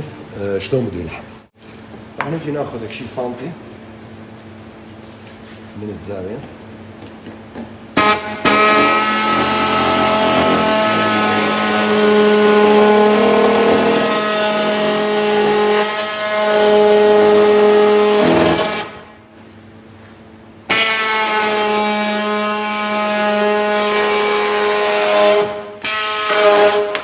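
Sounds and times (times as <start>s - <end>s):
power tool cutting plastic: 8.0s - 19.1s, 20.7s - 21.5s, 23.4s - 27.0s.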